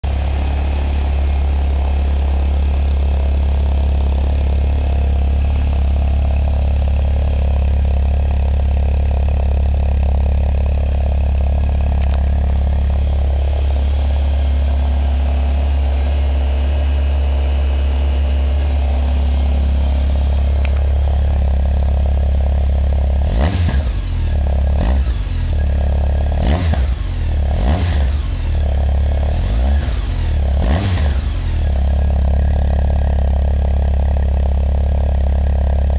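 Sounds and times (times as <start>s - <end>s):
motorcycle engine idling: 0.0s - 35.9s
motorcycle throttle revs: 23.2s - 25.6s, 26.4s - 28.6s, 29.3s - 31.8s.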